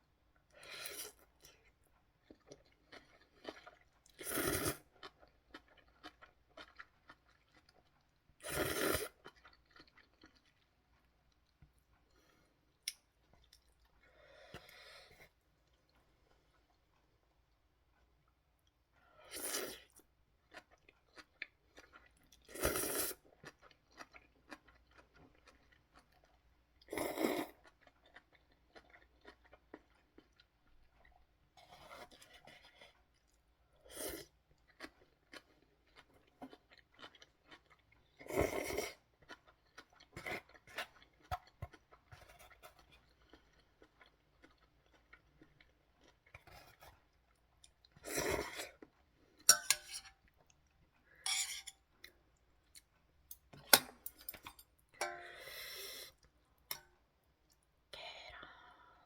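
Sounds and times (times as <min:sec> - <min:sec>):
person chewing and crunching: 0:00.6 - 0:17.2, 0:19.4 - 0:57.7
slurping noodles: 0:03.5 - 0:04.9, 0:08.4 - 0:09.3, 0:22.4 - 0:23.2, 0:48.0 - 0:48.8.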